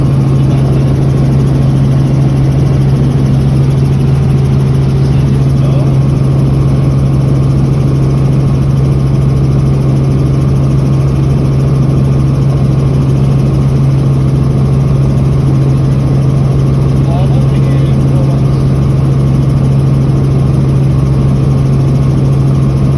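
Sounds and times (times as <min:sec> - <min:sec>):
helicopter engine and rotors: 0:00.0 - 0:22.9.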